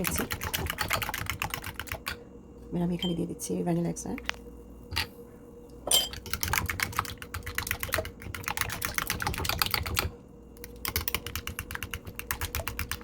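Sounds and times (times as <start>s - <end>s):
fork whisking in a bowl: 0.0s - 2.2s, 6.2s - 10.1s, 10.9s - 13.0s.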